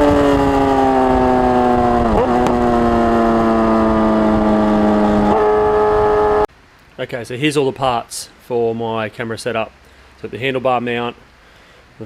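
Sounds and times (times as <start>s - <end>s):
motorcycle engine running: 0.0s - 6.4s.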